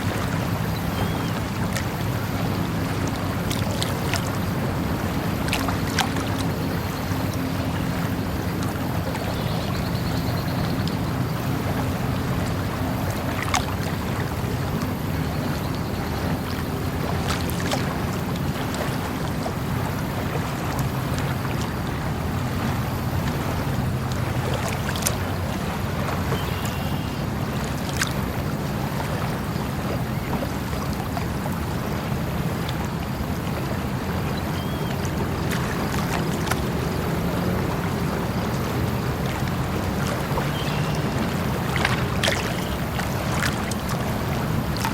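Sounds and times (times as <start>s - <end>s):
small clicks and splashes: 0.0s - 19.6s, 22.6s - 28.4s, 34.6s - 44.9s
flowing water rushing: 0.0s - 44.9s.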